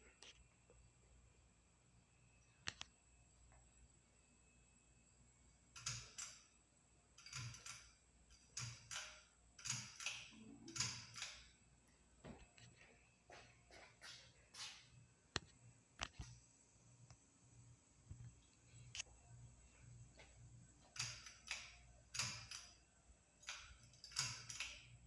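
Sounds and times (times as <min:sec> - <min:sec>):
ceiling fan sharp clicks: 0:05.8 - 0:06.6, 0:07.2 - 0:11.6, 0:20.8 - 0:22.8, 0:23.4 - 0:25.0
ceiling fan rattling: 0:05.8 - 0:11.8, 0:20.1 - 0:25.0.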